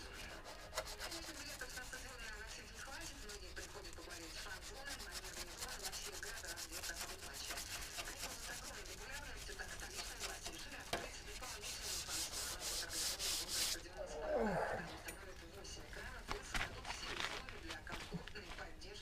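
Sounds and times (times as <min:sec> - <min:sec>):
sandpaper rubbing on car panel: 0:00.0 - 0:13.8.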